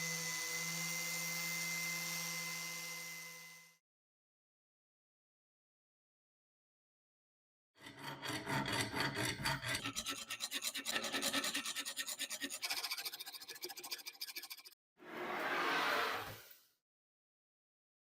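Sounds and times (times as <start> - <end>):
rasping brushing on metal: 7.8 - 14.8.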